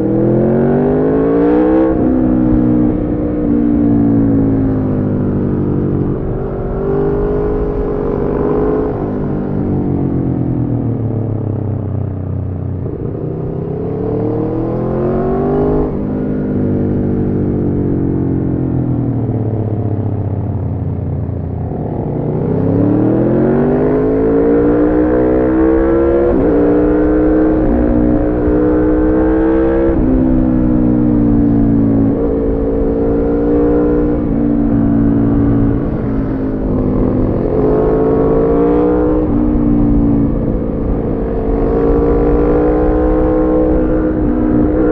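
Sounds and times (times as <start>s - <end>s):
motorcycle engine revving: 21.4s - 44.9s.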